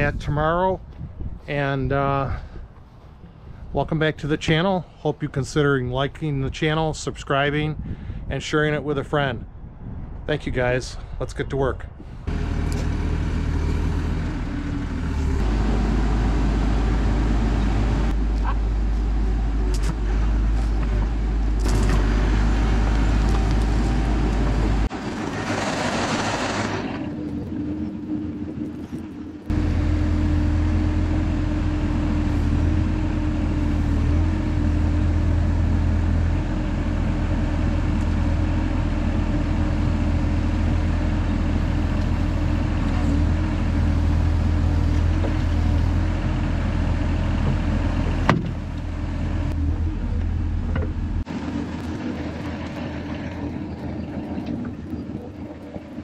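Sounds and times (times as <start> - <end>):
heavy equipment engine running: 12.2 - 56.0.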